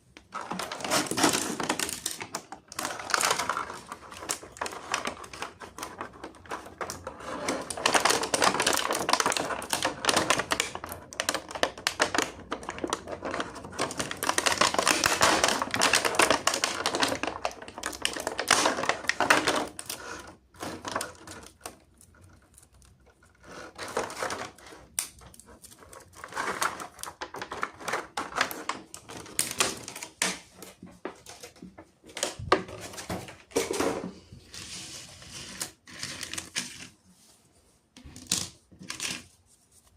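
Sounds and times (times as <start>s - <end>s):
packaging rustling: 0.3s - 33.9s.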